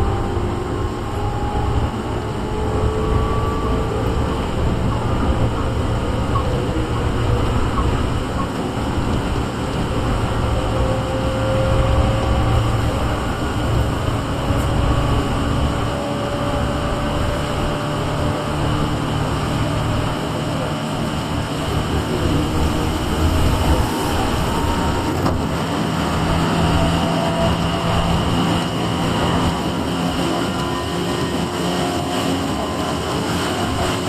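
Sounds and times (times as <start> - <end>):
train wheels rumbling on rails: 0.0 - 34.0.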